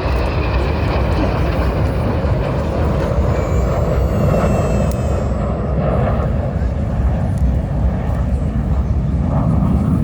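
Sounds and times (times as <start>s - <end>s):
faint high whine: 0.0s - 10.0s
jet engine rumble: 0.0s - 10.0s.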